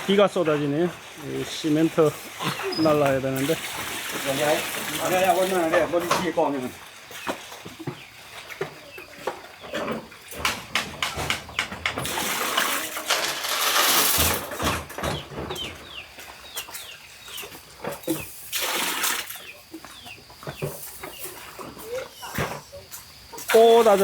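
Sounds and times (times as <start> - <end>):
chickens peeping: 15.0 - 18.3, 19.4 - 22.6.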